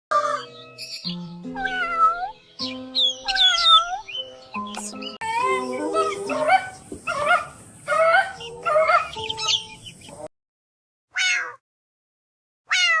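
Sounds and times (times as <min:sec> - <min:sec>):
kitten meowing: 0:01.6 - 0:02.4, 0:03.2 - 0:04.1, 0:11.2 - 0:11.6, 0:12.7 - 0:13.0.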